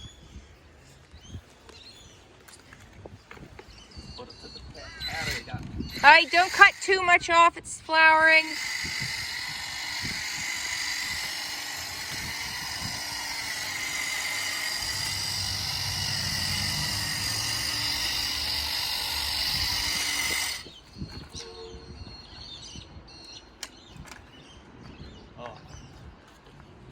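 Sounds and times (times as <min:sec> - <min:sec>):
hedge trimmer cutting: 0:05.2 - 0:20.7.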